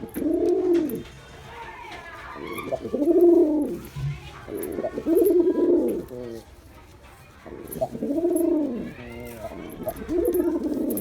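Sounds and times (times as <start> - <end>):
pigeon cooing: 7.7 - 11.0.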